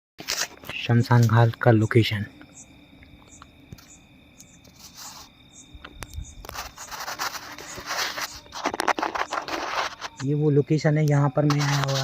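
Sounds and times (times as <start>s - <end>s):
scraping and rustling with clicks: 0.2s - 1.4s, 4.6s - 10.4s, 11.4s - 12.0s.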